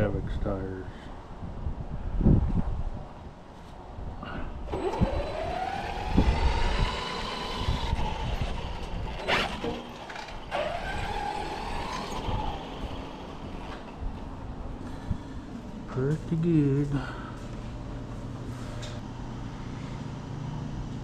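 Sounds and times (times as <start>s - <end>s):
electric rc car motor whining: 4.7s - 13.9s.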